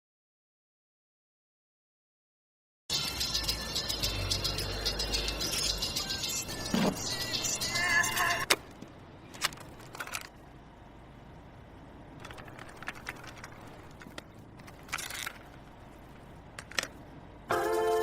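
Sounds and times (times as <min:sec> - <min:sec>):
background hiss and hum: 0:05.2 - 0:18.0.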